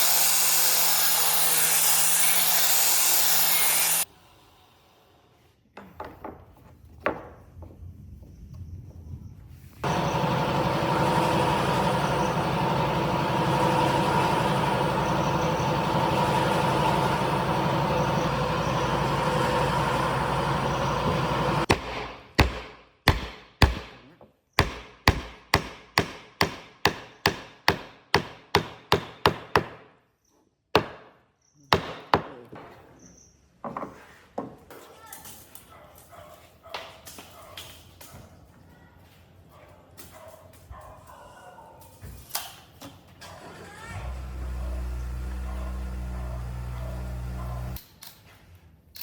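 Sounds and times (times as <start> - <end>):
power tool whining: 0.0 - 4.1, 9.8 - 23.9, 43.5 - 47.8
sharp knocks on wood: 21.7 - 29.8, 30.8 - 31.1, 31.8 - 32.7.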